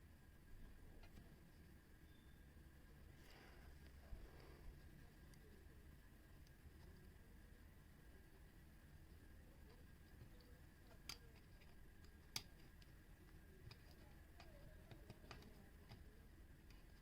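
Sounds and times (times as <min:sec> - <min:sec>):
small parts clicking: 0:10.0 - 0:17.0.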